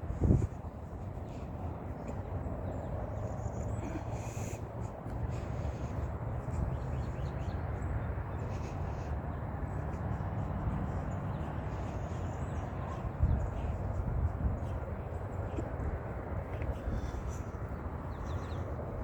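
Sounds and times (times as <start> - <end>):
low outdoor rumble: 0.0 - 19.0.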